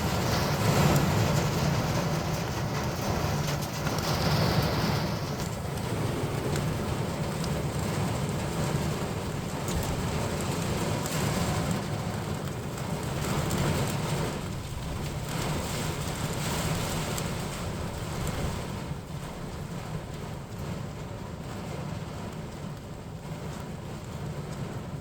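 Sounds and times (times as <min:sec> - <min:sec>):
continuous low rumble: 0:00.0 - 0:25.0
raindrop ticks: 0:00.0 - 0:25.0
steady rain: 0:00.0 - 0:25.0.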